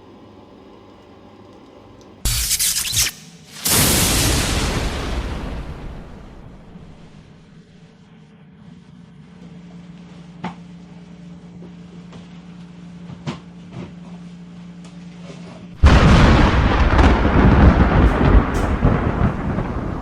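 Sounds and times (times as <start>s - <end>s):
faint steady hum: 0.0s - 2.4s
loud rushing rumble: 3.6s - 7.8s, 15.8s - 20.0s.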